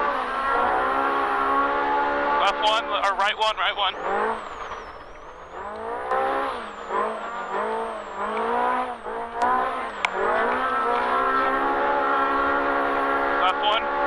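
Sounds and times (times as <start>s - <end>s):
vehicle engine revving: 0.0s - 14.0s.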